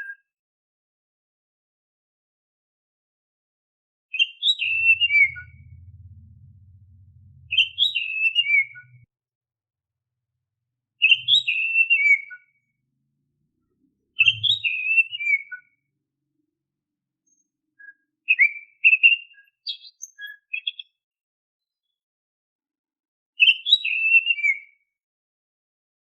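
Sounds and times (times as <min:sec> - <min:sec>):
magpie-robin whistling song: 0:04.1 - 0:05.8, 0:07.5 - 0:09.1, 0:11.0 - 0:12.6, 0:14.2 - 0:15.8, 0:17.3 - 0:21.0, 0:23.4 - 0:24.8.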